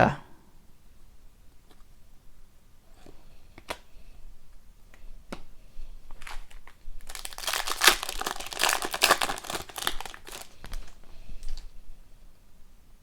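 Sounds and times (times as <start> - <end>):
foil wrapper crinkling: 6.1 - 11.7.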